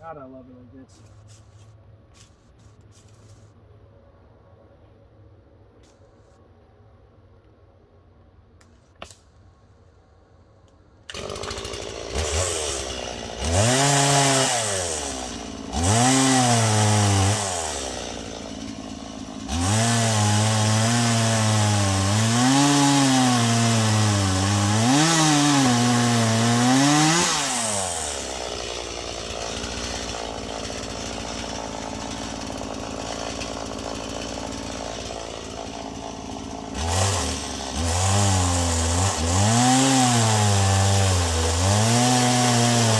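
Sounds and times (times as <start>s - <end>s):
chainsaw revving and idling: 11.1s - 42.9s.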